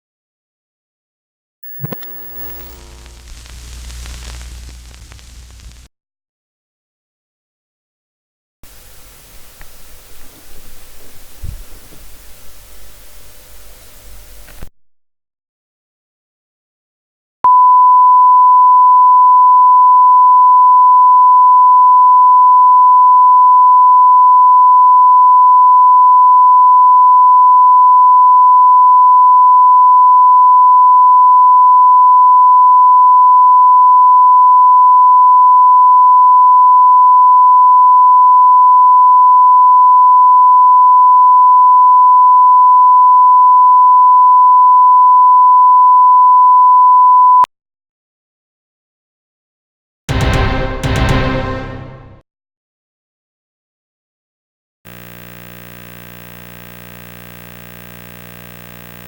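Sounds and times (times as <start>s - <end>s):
steady sine test tone: 1.6s - 5.9s, 54.9s - 59.0s.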